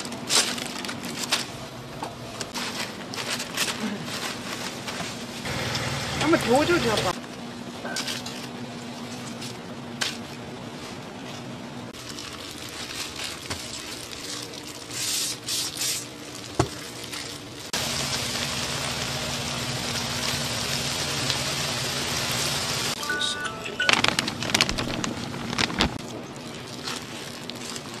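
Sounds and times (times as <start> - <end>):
food sizzling in a pan: 17.8 - 23.0.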